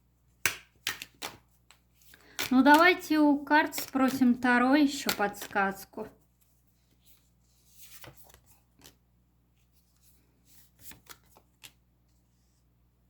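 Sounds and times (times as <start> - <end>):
cards being shuffled: 0.5 - 9.0, 9.9 - 11.8.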